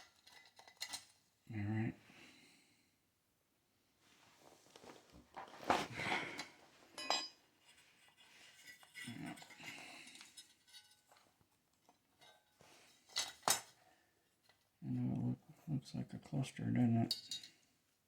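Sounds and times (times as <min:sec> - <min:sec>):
metal parts clinking and knocking: 0:00.0 - 0:01.2, 0:07.0 - 0:07.4
scraping and rustling: 0:04.0 - 0:11.3.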